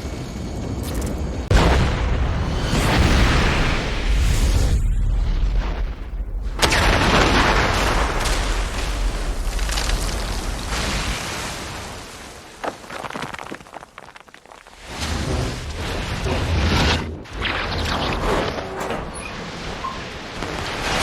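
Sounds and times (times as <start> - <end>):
explosion blast: 1.5 - 11.2
rumbling debris with cracks: 5.0 - 21.0.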